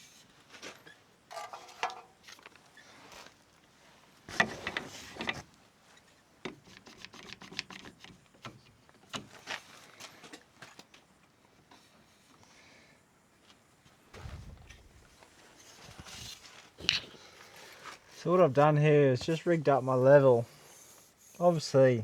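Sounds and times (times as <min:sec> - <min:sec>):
tools clattering: 0:01.3 - 0:02.2.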